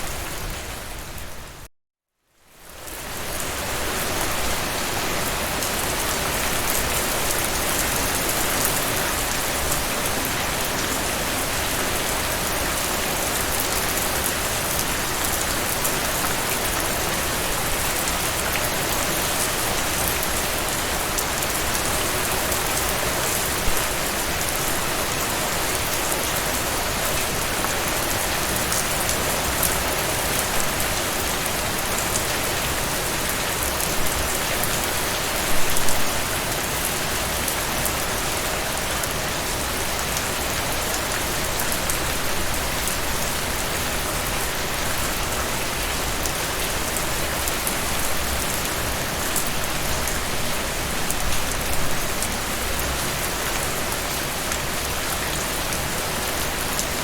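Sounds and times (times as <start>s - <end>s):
steady rain spattering: 2.5s - 57.0s.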